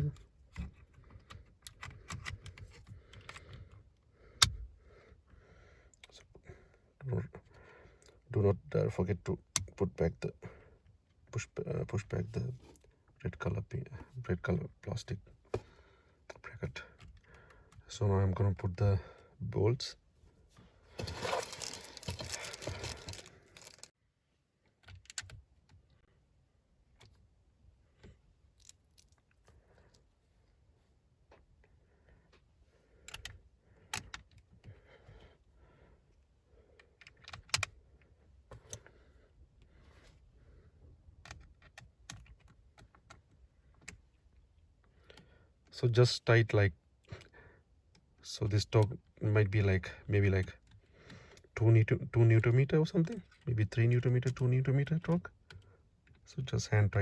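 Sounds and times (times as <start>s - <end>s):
plastic clicks and rattles: 21.0s - 23.9s
plastic crinkling and rustling: 21.0s - 23.9s.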